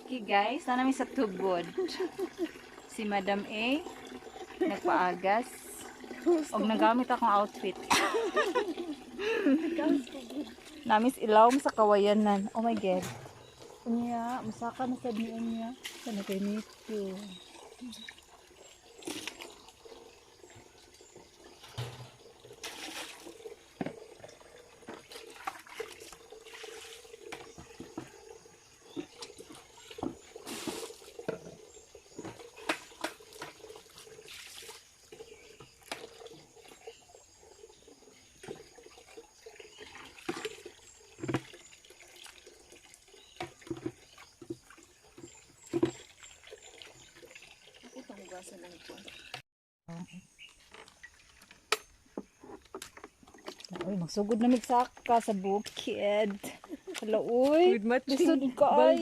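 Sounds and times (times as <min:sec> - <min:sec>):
spring water running and splashing: 0:00.0 - 0:49.4, 0:50.5 - 0:59.0
sharp splashes and knocks: 0:21.6 - 0:28.2, 0:40.0 - 0:42.4, 0:43.3 - 0:47.1.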